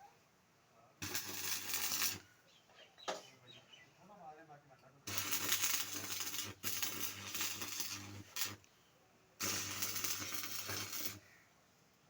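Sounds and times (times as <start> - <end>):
welder transformer hum: 1.0 - 2.2, 5.1 - 8.7, 9.4 - 11.3
welding arc crackling: 1.0 - 2.3, 5.1 - 8.7, 9.4 - 11.3.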